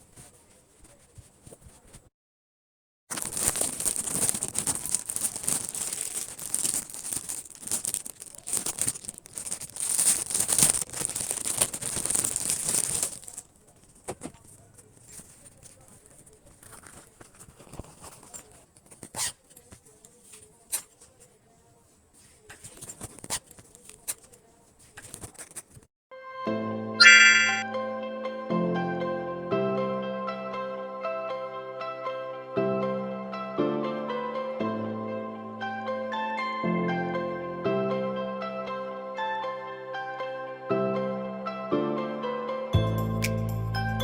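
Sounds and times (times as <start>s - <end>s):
packaging tearing and crinkling: 3.1s - 19.8s, 22.5s - 24.3s.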